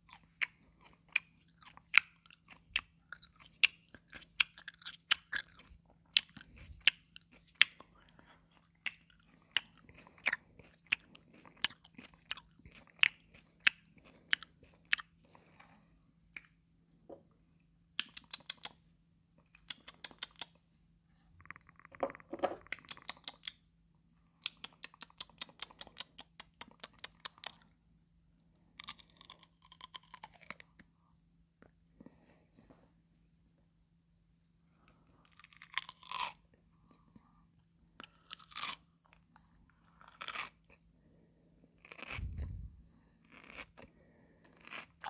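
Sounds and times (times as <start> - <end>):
crackly chewing clicks: 0.0 - 15.1, 18.0 - 18.8, 19.4 - 20.6, 22.6 - 23.6, 24.4 - 27.8
cucumber crunching: 8.8 - 15.1, 28.8 - 30.7, 35.3 - 36.4, 38.0 - 39.2, 39.8 - 40.8, 41.8 - 43.9, 44.5 - 45.0.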